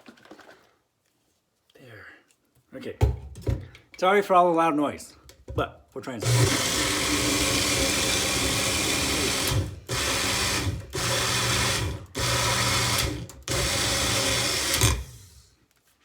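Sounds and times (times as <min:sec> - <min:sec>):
blender motor pulsing: 0:06.2 - 0:15.5.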